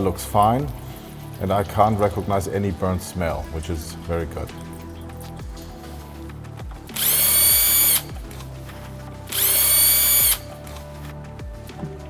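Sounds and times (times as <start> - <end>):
power tool whine: 6.7 - 11.1.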